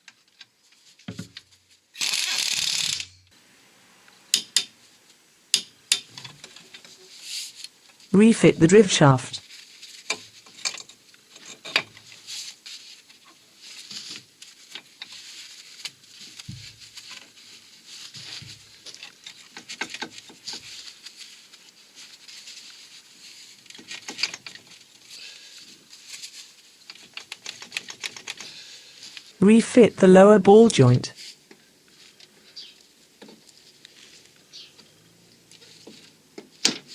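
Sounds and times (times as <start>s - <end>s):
metal parts and tools clicking: 2.0s - 3.2s.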